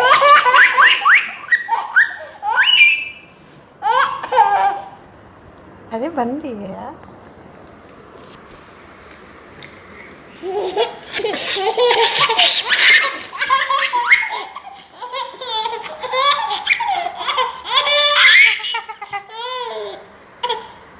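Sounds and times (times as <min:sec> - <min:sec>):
baby laughing: 0:00.0 - 0:03.2, 0:03.8 - 0:05.0, 0:10.4 - 0:20.8.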